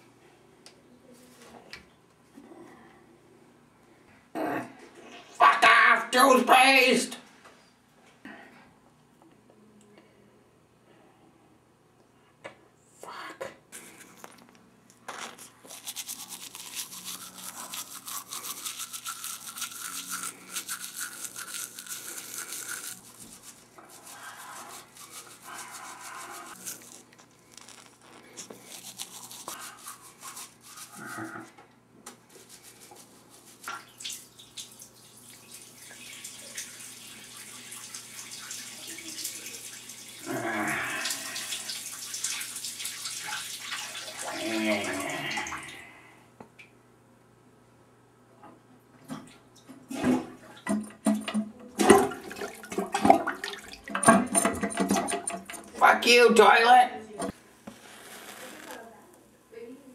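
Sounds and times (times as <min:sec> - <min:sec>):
toothbrush scrubbing teeth: 0:15.1 - 0:31.5, 0:32.3 - 0:43.6.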